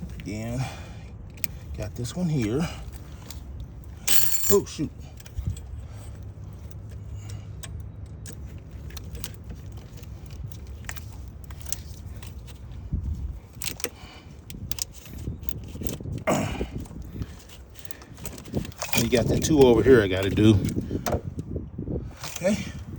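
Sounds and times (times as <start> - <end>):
metallic clinks of hand tools: 4.1 - 5.7.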